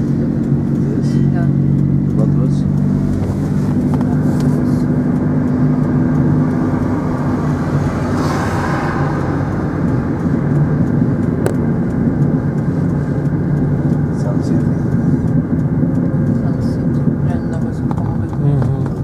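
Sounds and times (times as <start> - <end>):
car engine hum and road noise: 0.0 - 19.0
rushing noise: 2.6 - 14.1.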